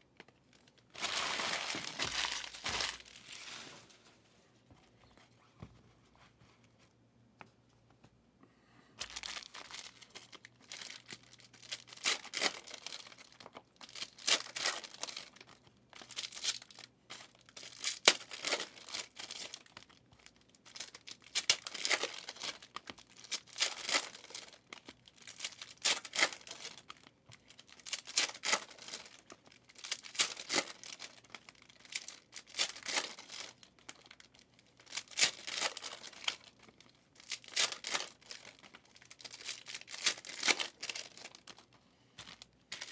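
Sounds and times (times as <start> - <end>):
card wrappers tearing and crinkling: 0.4 - 3.9, 9.0 - 16.8, 20.7 - 41.6, 42.3 - 42.9.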